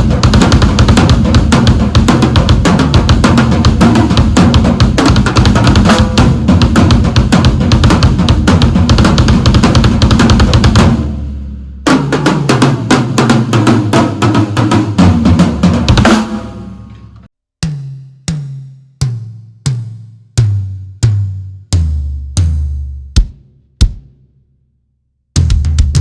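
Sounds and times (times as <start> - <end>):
drum kit playing fast: 0.0 - 18.4, 25.4 - 26.0
single drum strokes ringing: 16.0 - 17.8.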